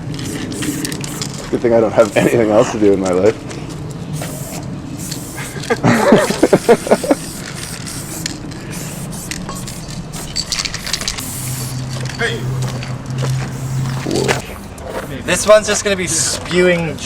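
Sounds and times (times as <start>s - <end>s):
spray paint can hissing: 0.0s - 2.4s, 4.1s - 15.4s.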